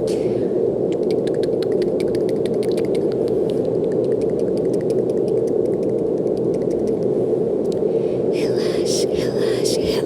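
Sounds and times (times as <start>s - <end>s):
brown noise rushing hiss: 0.0s - 10.0s
faint crackling clicks: 0.9s - 7.9s.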